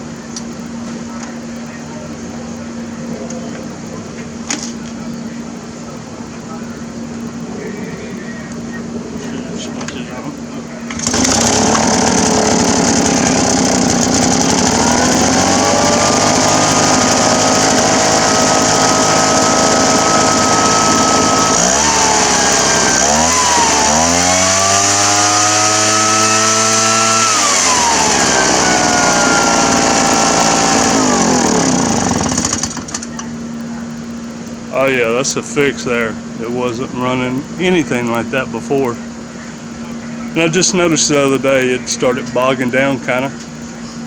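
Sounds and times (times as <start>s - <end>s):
leaf blower engine revving: 10.8s - 39.0s.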